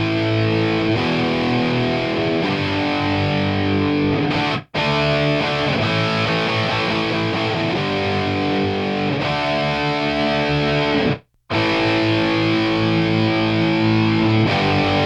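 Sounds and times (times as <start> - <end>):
distorted electric guitar chords: 0.0 - 15.0.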